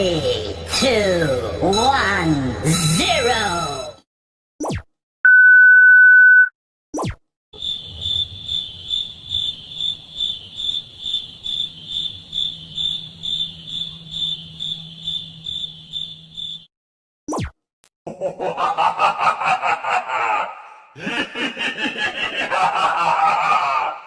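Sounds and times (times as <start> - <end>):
high censor bleep: 5.3 - 6.5
crickets chirping: 7.6 - 16.7.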